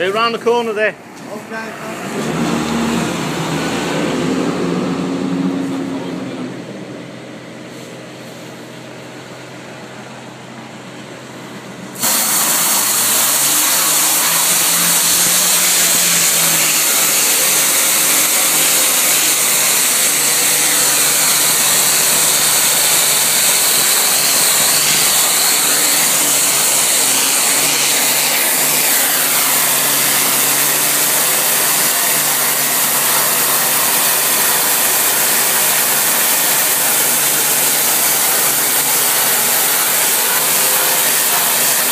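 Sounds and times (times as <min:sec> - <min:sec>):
pressure washer motor running: 0:00.0 - 0:41.9
high-pressure water spray hiss: 0:12.0 - 0:41.9.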